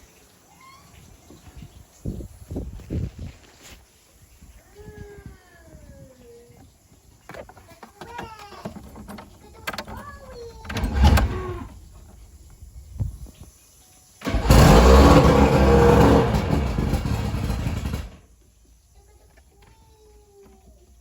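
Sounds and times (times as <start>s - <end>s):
outboard motor running: 14.2s - 18.1s.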